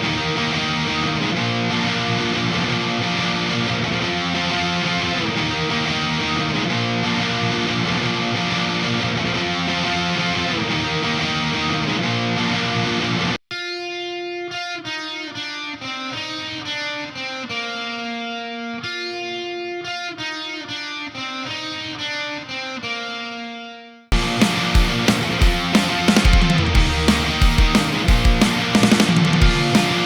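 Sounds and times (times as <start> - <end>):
distorted electric guitar: 0.0 - 20.6, 24.1 - 30.0
distorted guitar chugging: 24.1 - 30.0.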